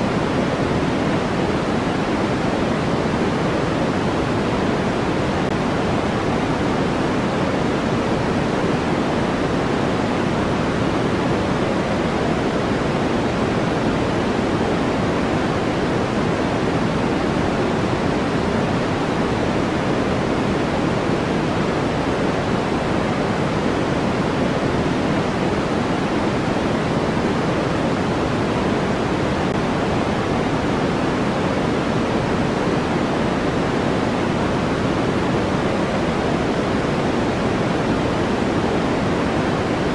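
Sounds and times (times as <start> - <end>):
steady noise hiss: 0.0 - 39.9.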